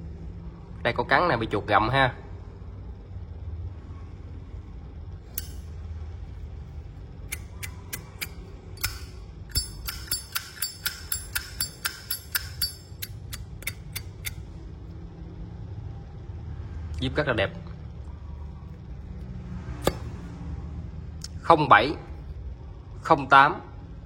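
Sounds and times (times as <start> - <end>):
lighter lid metallic clicks: 5.3 - 5.7, 7.3 - 14.4.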